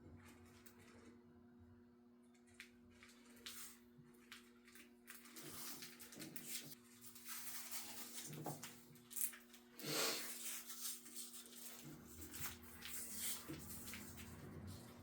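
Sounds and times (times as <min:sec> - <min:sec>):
tape rubbing and rasping: 0:05.1 - 0:15.0.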